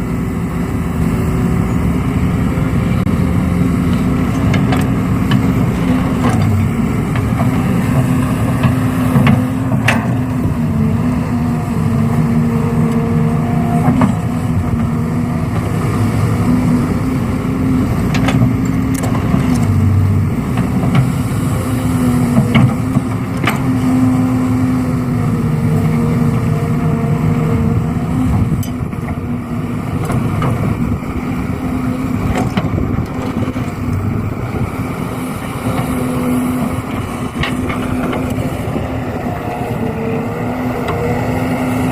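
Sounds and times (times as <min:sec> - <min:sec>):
engine running: 0:00.0 - 0:41.9.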